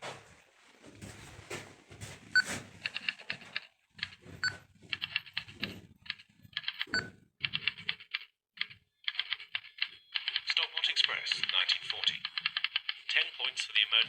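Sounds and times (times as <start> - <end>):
typewriter keys clacking: 4.9 - 13.1.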